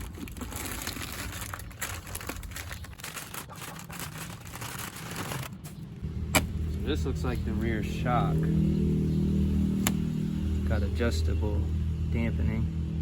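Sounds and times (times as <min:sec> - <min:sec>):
packaging crinkling and rustling: 0:00.0 - 0:05.9.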